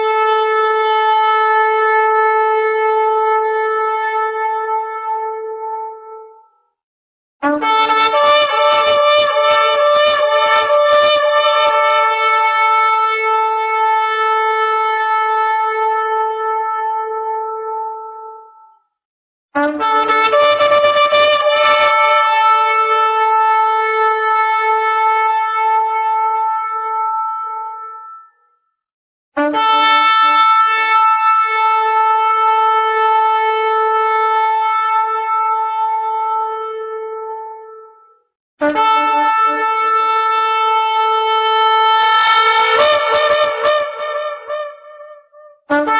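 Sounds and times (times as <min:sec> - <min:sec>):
shofar blowing: 0:07.4 - 0:17.8, 0:19.6 - 0:28.4, 0:29.4 - 0:38.0, 0:38.6 - 0:45.9.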